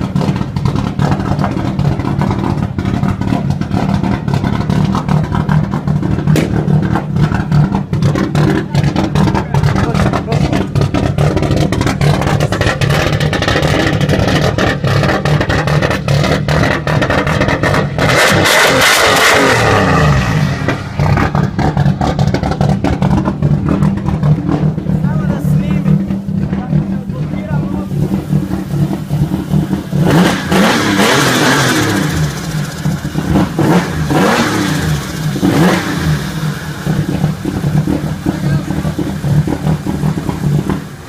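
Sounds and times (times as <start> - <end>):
car engine running and revving: 0.0 - 41.0.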